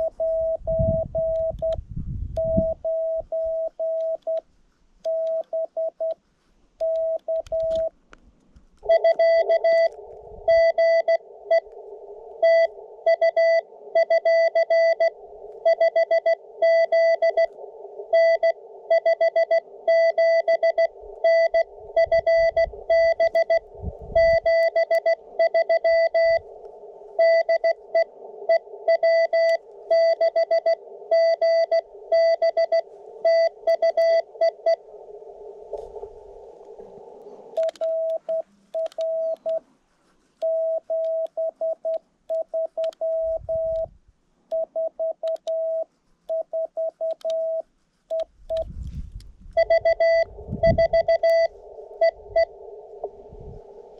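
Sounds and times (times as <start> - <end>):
morse code keyed tone: 0.0 - 4.4, 5.0 - 6.2, 6.8 - 7.9, 8.8 - 11.7, 12.4 - 35.8, 37.0 - 39.6, 40.4 - 43.9, 44.5 - 48.8, 49.5 - 53.9
morse code sidetone beep: 0.0 - 4.4, 5.0 - 6.2, 6.8 - 7.9, 8.8 - 11.7, 12.4 - 35.7, 36.8 - 39.6, 40.4 - 43.9, 44.5 - 48.7, 49.5 - 53.8
radio receiver hiss: 0.0 - 53.9.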